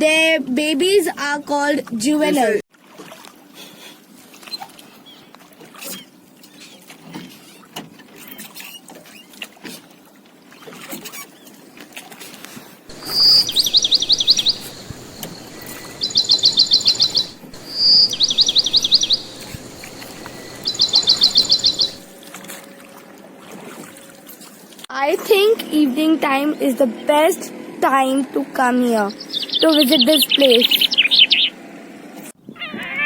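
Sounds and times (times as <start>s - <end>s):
high-pitched chirping trills: 12.9s - 22.1s, 29.1s - 31.5s.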